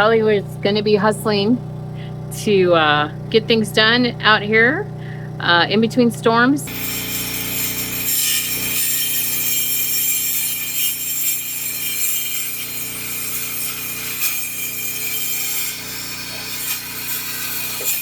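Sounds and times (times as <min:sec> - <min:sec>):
electric saw cutting: 0:00.0 - 0:18.0.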